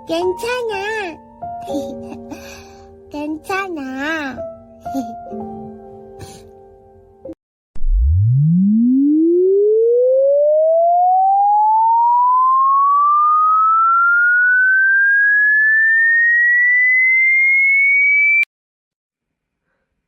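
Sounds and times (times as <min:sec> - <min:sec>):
electronic tone sweeping upward: 0:07.8 - 0:18.5.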